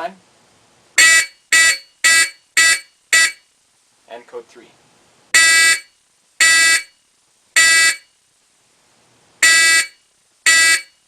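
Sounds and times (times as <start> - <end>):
fire alarm horn blasts: 1.0 - 3.5, 5.4 - 7.0, 7.6 - 8.1, 9.4 - 11.0.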